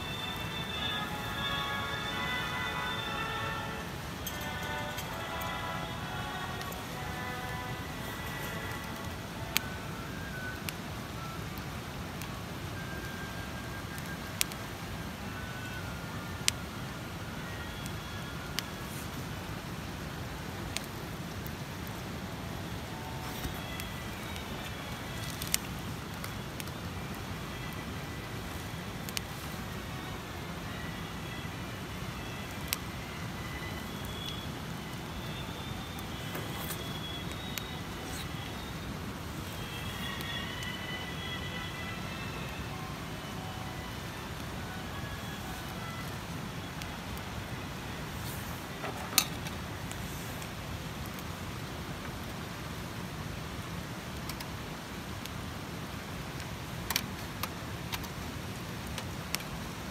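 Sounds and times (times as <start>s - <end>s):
campfire rumbling: 0.0s - 59.9s
burning wood crackling pops: 20.5s - 29.9s, 31.3s - 40.8s.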